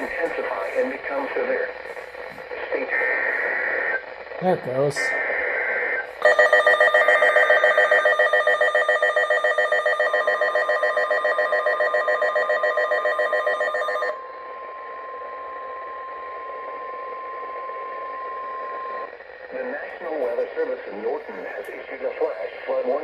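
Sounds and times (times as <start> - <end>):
rapidly pulsing radio alarm: 0.0 - 23.0
steady single-pitch alarm tone: 3.0 - 19.4.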